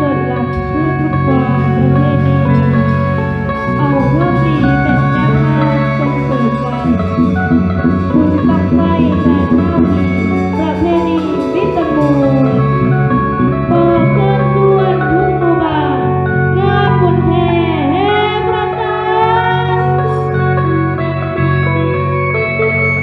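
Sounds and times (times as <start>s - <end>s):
pop song with guitar and bass: 0.0s - 23.0s.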